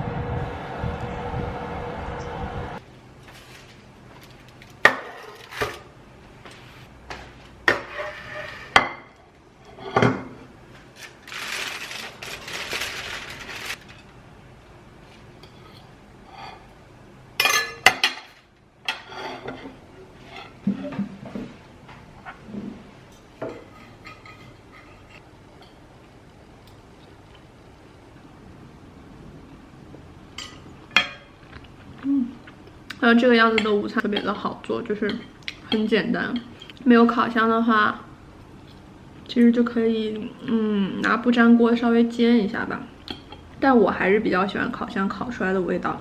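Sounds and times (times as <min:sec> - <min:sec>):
dishes and cutlery clinking: 0:17.4 - 0:21.1, 0:23.4 - 0:25.8.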